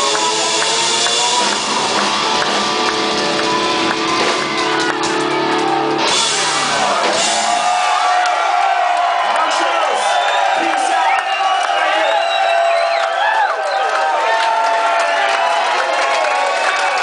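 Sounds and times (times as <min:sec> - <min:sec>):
live rock band playing: 0:00.0 - 0:08.7
drum kit: 0:00.0 - 0:08.9.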